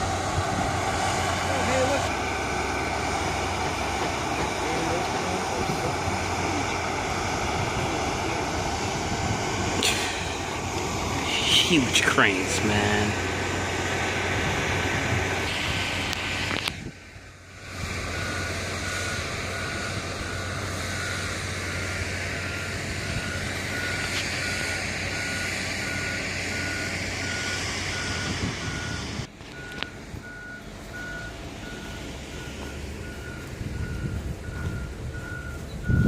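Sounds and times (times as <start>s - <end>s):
diesel engine running: 0.0s - 36.0s
backup alarm beeping: 18.0s - 21.6s, 22.2s - 36.0s.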